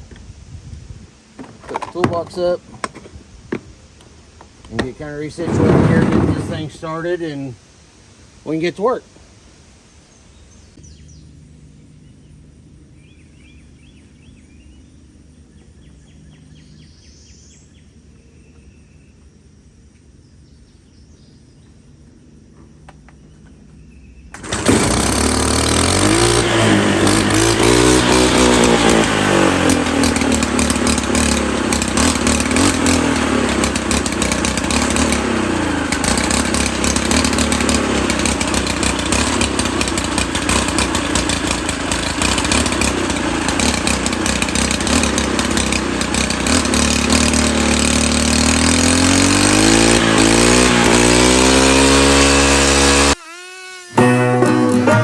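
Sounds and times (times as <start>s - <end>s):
brush cutter revving: 1.4s - 3.0s, 4.7s - 7.4s, 24.3s - 55.0s.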